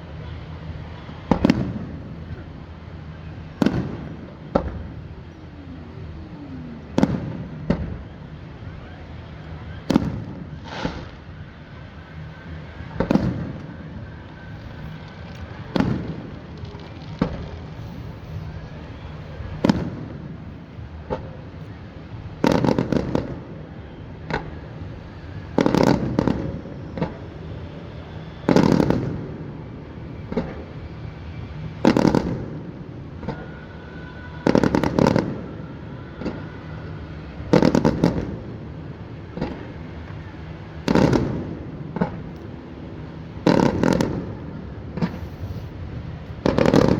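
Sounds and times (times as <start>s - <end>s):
firework shells booming: 14.5s - 20.2s.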